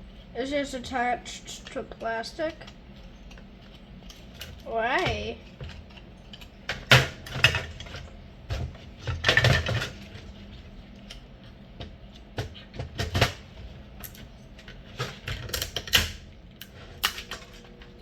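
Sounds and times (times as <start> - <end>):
plastic parts clicking and clattering: 14.0 - 17.7.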